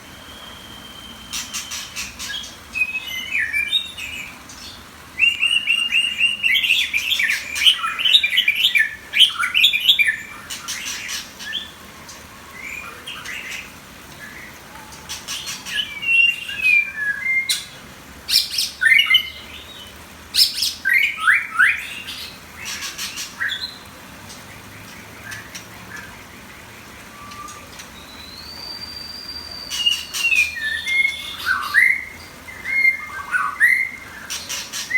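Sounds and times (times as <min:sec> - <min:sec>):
bird singing whistled notes: 0:00.0 - 0:04.3, 0:05.2 - 0:10.4, 0:15.4 - 0:17.7, 0:27.1 - 0:34.9.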